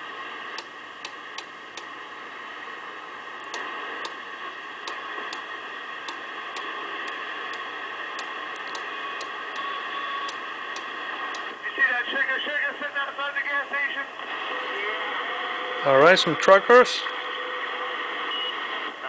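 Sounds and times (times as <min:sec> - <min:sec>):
radio speaker hiss: 0:00.0 - 0:19.0
static clicks: 0:00.5 - 0:02.0, 0:03.4 - 0:11.6.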